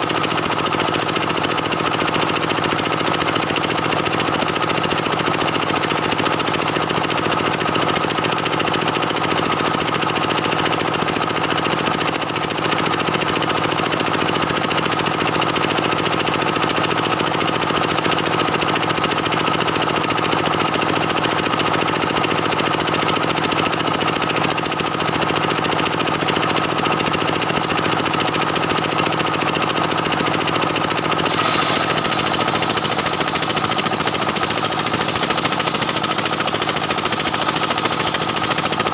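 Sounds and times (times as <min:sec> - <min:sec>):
chainsaw cutting through wood: 0:31.0 - 0:38.9.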